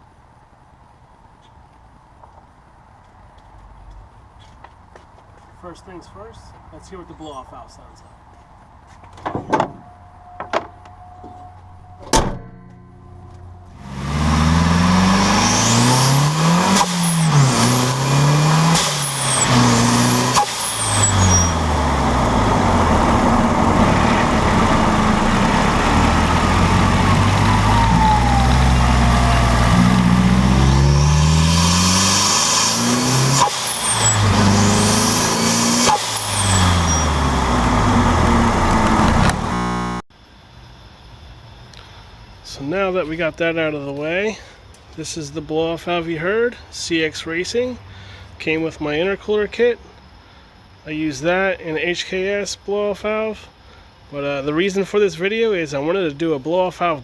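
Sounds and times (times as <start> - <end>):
turbo whistling: 13.6 - 40.0
car engine revving through gears: 13.7 - 40.0
blow-off valve venting: 13.8 - 39.1.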